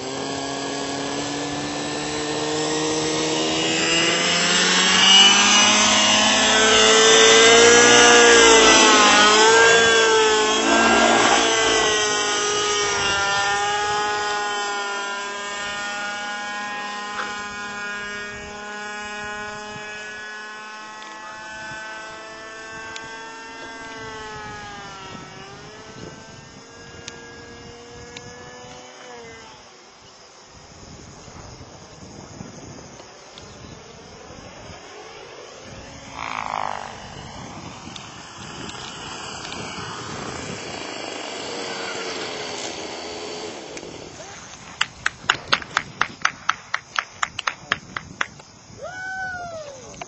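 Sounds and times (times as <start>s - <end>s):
model helicopter whining: 0.0s - 46.0s.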